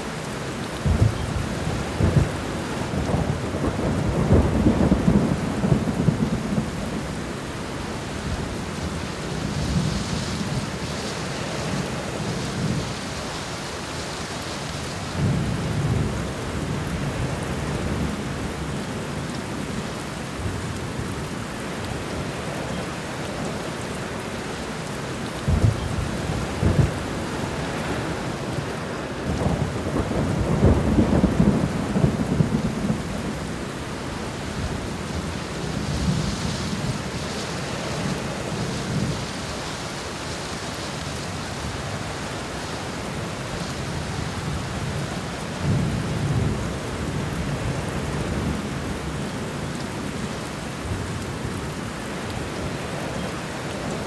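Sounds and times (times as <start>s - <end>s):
steady rain falling: 0.0s - 54.0s
thunder rumbling: 0.8s - 7.4s, 25.4s - 39.7s.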